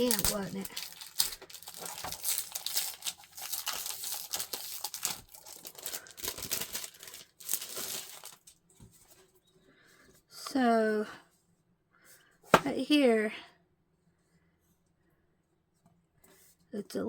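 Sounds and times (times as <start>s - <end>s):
packaging crinkling and tearing: 0.0s - 8.6s.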